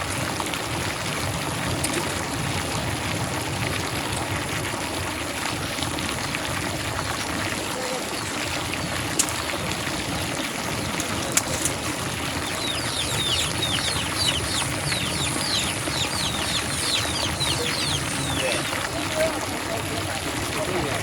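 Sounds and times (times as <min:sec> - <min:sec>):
running water: 0:00.0 - 0:21.0
small bird chirping: 0:11.6 - 0:18.7.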